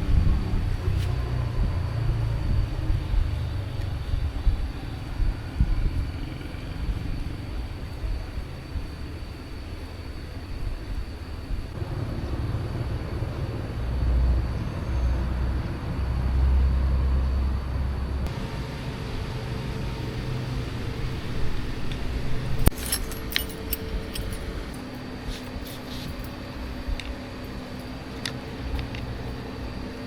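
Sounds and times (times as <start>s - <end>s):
low rumble: 0.0s - 8.9s
small metal parts clinking: 22.6s - 26.4s.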